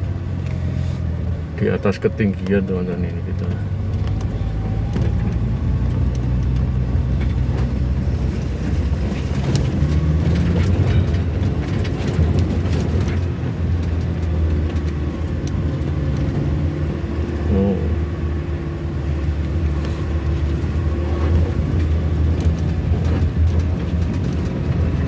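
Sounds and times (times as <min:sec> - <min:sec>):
car engine running: 0:00.0 - 0:25.0
knocks and rattles from bumps: 0:07.1 - 0:15.0.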